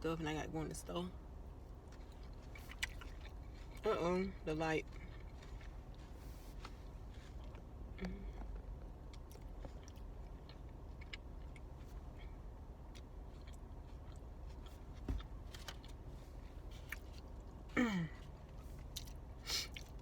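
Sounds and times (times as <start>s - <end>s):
person chewing food: 1.7s - 3.9s, 4.8s - 20.0s.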